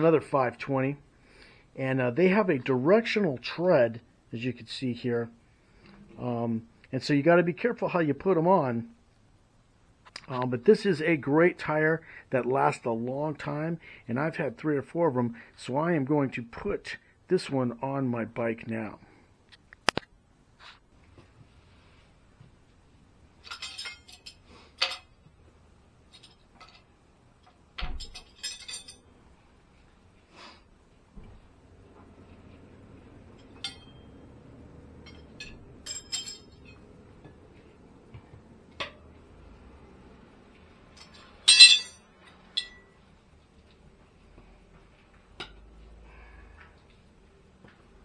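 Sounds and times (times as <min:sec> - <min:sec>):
faint steady hum: 0:00.0 - 0:48.0
hand tools clinking: 0:23.4 - 0:25.1, 0:28.1 - 0:29.0, 0:35.0 - 0:36.8, 0:41.0 - 0:42.9.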